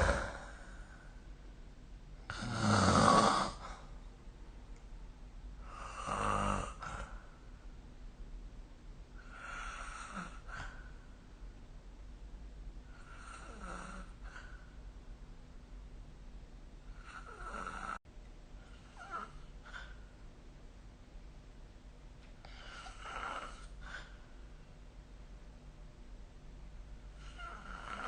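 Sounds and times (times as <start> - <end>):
person snoring: 0.0 - 1.0, 2.3 - 3.9, 5.6 - 7.2, 9.2 - 10.8, 13.0 - 14.6, 17.0 - 18.0, 22.6 - 24.1, 27.2 - 28.0.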